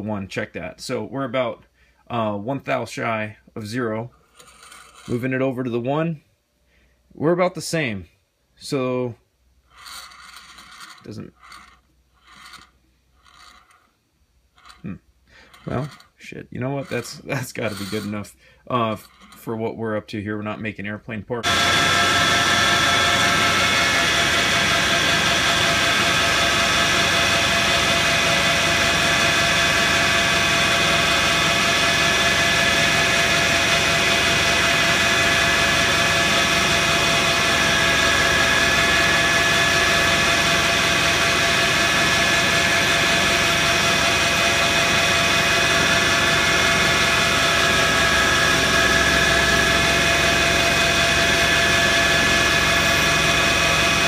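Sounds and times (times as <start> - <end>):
metal lathe running: 9.8 - 13.9, 14.6 - 16.1, 16.8 - 18.2, 21.4 - 54.0.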